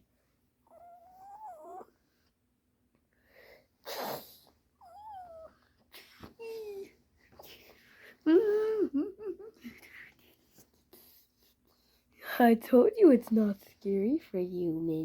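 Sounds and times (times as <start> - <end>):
child whimpering: 3.9 - 7.0.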